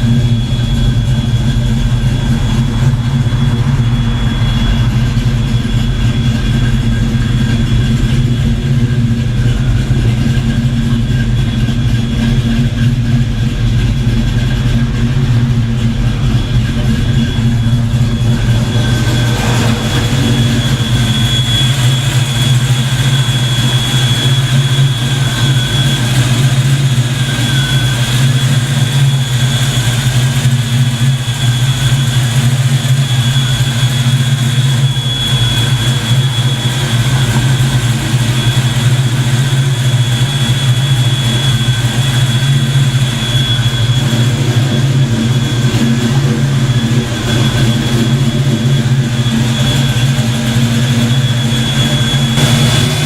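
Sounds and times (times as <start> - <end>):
car engine idling: 0.0 - 53.0
high-pitched whine: 0.0 - 53.0.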